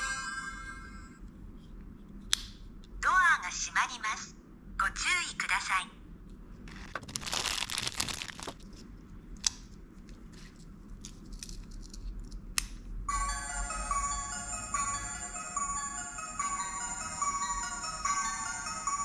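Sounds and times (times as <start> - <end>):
toy speaker chiming melody: 0.0 - 1.2, 13.1 - 19.0
plastic packaging tearing and crinkling: 6.7 - 8.8.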